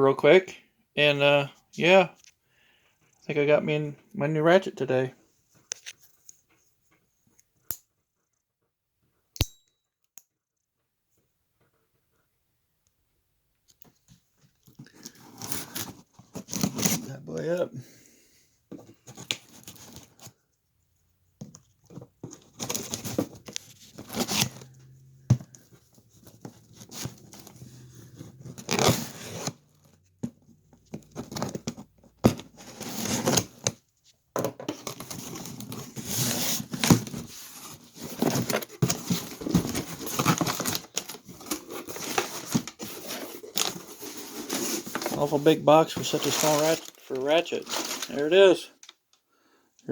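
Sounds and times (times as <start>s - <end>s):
cardboard crinkling and scraping: 14.0s - 17.5s, 18.7s - 20.5s, 21.4s - 33.9s, 34.7s - 48.9s
tape and cardboard tearing: 22.4s - 24.8s, 28.2s - 29.6s.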